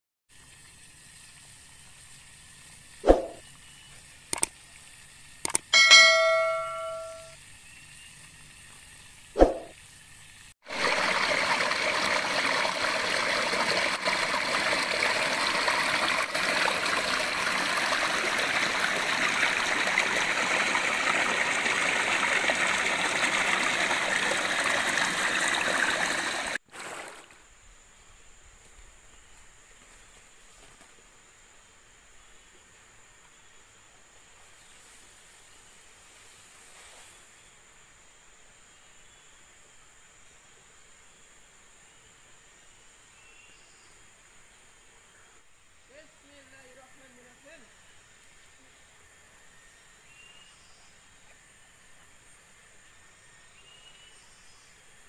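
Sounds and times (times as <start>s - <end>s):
sharp clicks: 4.3s - 4.6s, 5.4s - 5.7s
ringing bell-like tone: 5.8s - 7.4s
rush of water: 10.7s - 27.3s.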